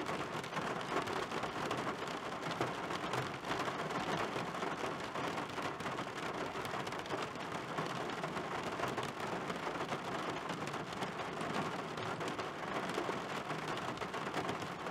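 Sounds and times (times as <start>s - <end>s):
heavy rain on a car windshield: 0.0s - 14.9s.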